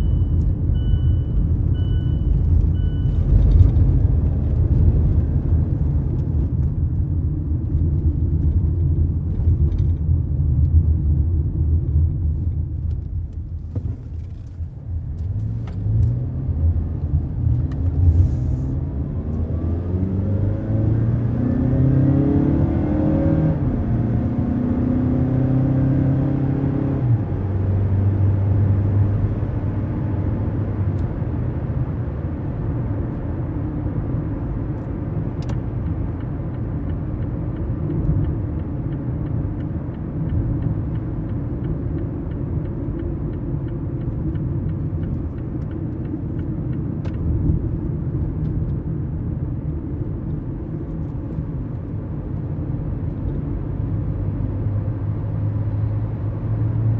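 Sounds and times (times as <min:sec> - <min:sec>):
car engine shifting up through gears: 0:00.0 - 0:56.9
road noise: 0:00.0 - 0:56.9.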